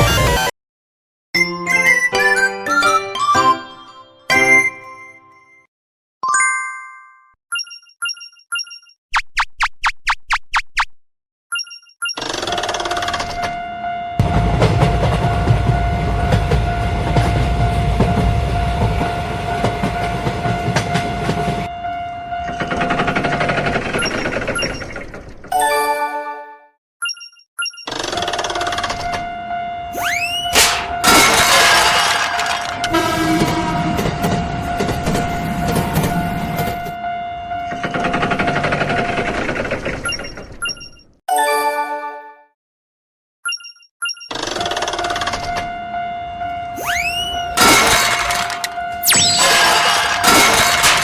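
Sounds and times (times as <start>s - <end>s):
crossing bell ringing: 13.4s - 23.2s, 29.2s - 39.1s
train rumble with wheel clatter: 14.2s - 21.7s, 30.7s - 37.0s
train horn: 30.8s - 37.8s, 45.6s - 46.8s.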